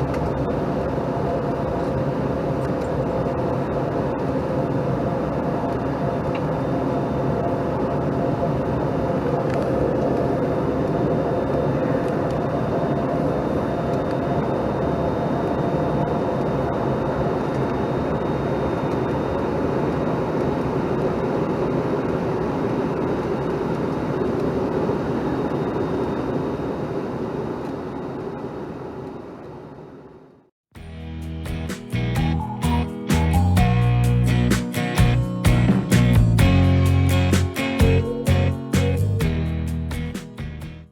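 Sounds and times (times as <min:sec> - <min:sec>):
thin high whine: 0:30.8 - 0:40.8.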